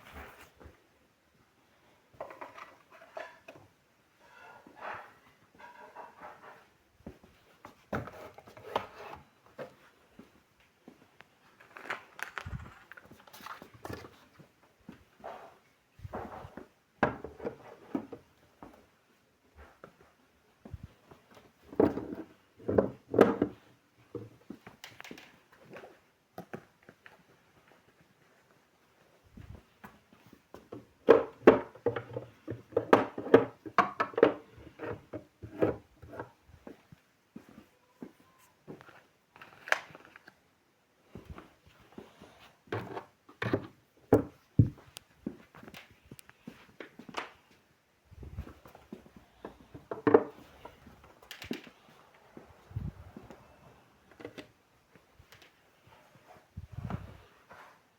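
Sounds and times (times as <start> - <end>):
objects knocking and clattering: 30.6 - 36.4, 42.7 - 44.9, 49.4 - 51.8.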